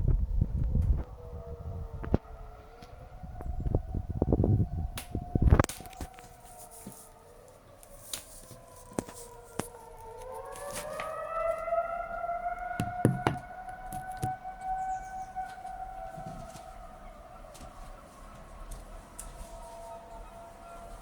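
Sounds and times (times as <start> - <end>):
steady siren tone: 0.2 - 21.0
warning siren winding up: 8.5 - 17.0.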